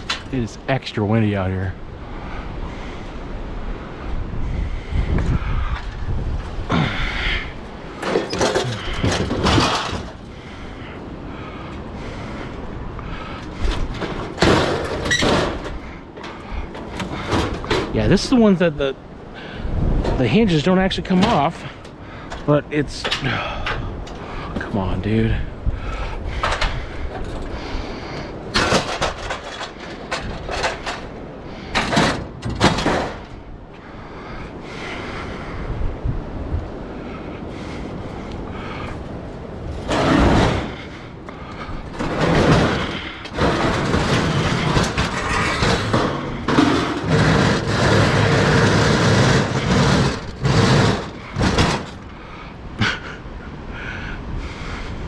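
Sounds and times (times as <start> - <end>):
wind buffeting microphone: 0.0 - 55.0
oven door hinges rattling: 8.0 - 10.2, 13.5 - 18.2, 28.5 - 33.4, 41.9 - 52.1.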